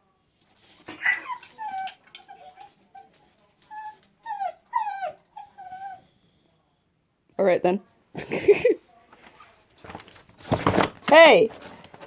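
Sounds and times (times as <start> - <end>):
dog whining: 0.5 - 6.2.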